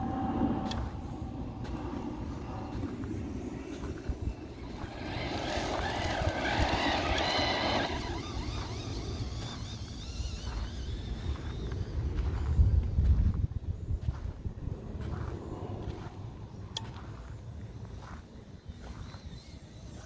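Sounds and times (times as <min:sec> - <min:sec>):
steady low rumble: 0:00.0 - 0:18.0
electric motor whining: 0:00.6 - 0:13.2.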